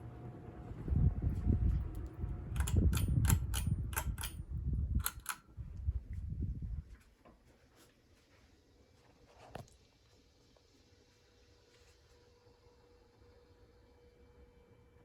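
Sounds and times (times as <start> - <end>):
ceiling fan rumbling: 0.0 - 8.4
sharp clicks: 2.6 - 4.4, 5.0 - 5.5.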